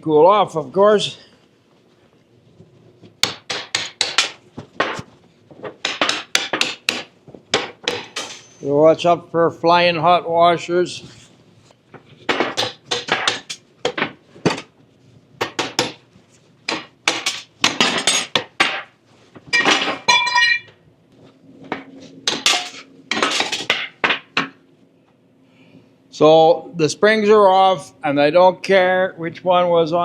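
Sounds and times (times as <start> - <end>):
metallic clanking and clinking: 7.9 - 8.7, 19.5 - 20.8, 22.3 - 24.0.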